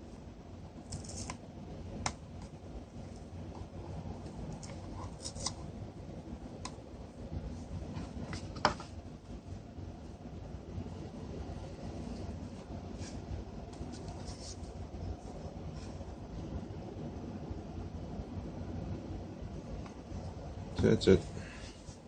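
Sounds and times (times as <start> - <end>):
rubbing and scraping plastic: 4.5 - 5.7, 12.0 - 16.0.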